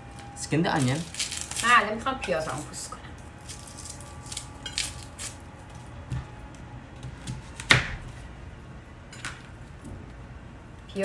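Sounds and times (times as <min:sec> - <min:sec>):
dry onion skin crackling: 0:00.0 - 0:06.6
steady low hum: 0:00.0 - 0:11.0.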